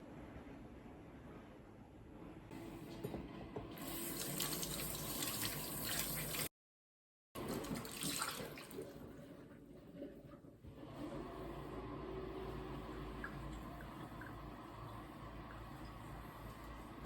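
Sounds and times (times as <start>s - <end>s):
tap water running into sink: 3.8s - 6.5s, 7.4s - 9.0s.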